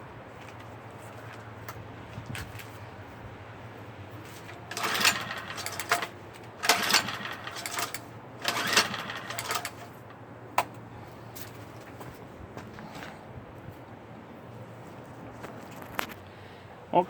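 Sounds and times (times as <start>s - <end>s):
recoil starter rattling whirr: 4.4s - 11.6s.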